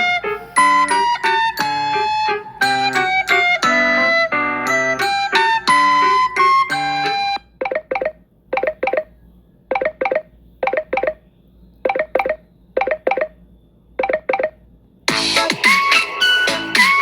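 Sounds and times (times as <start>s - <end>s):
plucked melodic ringtone: 0.6s - 8.7s.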